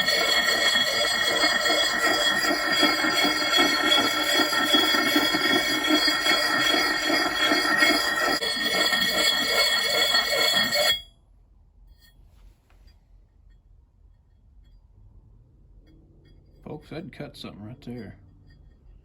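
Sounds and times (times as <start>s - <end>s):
sharpening puck scraping axe: 0.0s - 11.0s.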